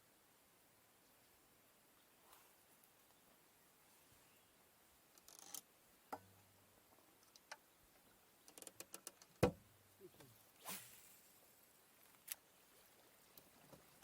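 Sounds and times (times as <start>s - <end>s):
faint sharp clicks and knocks: 5.1s - 9.6s.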